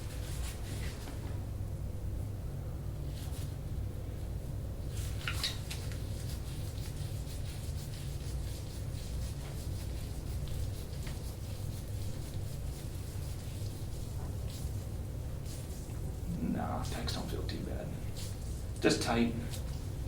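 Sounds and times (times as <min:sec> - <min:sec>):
steady low hum: 0:00.0 - 0:20.0
hands rubbing over skin: 0:04.9 - 0:20.0.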